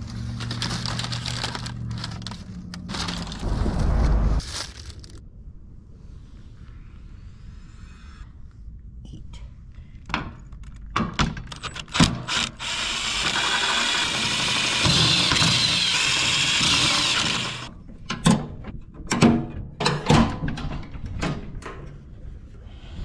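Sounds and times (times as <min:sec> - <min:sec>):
power tool running: 0:12.3 - 0:17.7.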